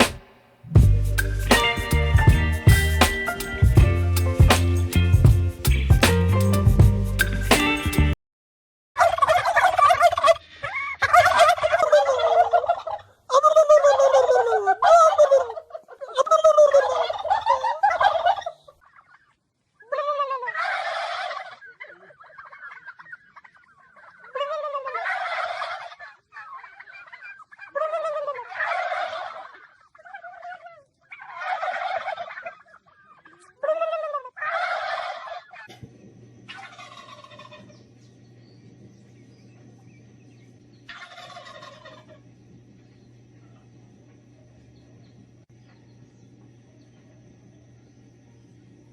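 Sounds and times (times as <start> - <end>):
steady low hum: 0.0 - 8.2, 35.7 - 48.9
turkey gobbling: 9.0 - 35.8, 36.5 - 37.8, 40.3 - 42.2.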